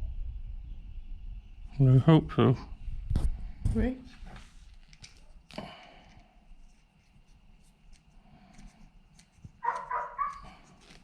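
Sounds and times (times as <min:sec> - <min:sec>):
dog whining: 0:09.6 - 0:10.4.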